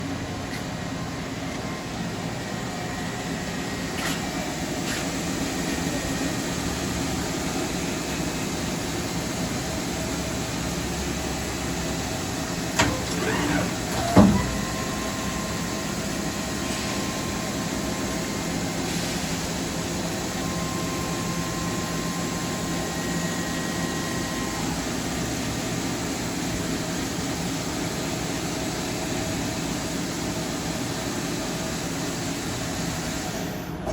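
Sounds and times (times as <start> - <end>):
lathe humming: 5.3 - 26.3.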